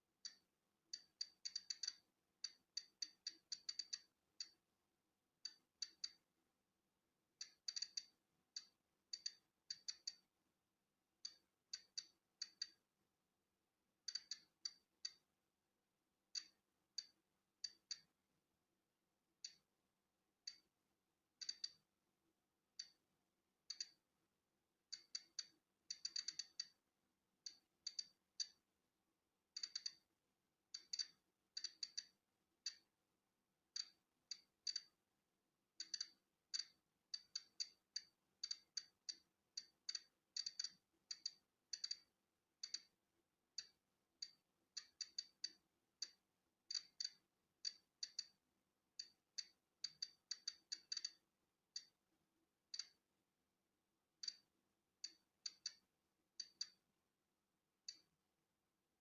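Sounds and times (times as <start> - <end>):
geiger counter clicking: 1.0 - 4.6, 5.4 - 6.2, 7.4 - 10.3, 11.2 - 12.8, 14.0 - 15.2, 16.4 - 18.1, 19.4 - 19.6, 21.4 - 21.8, 23.7 - 24.0, 24.9 - 26.8, 27.5 - 28.6, 29.6 - 30.0, 30.7 - 32.9, 33.7 - 35.0, 35.8 - 42.9, 43.6 - 48.4, 49.0 - 51.2, 51.8 - 52.0, 52.7 - 53.0, 54.2 - 56.8, 57.9 - 58.1.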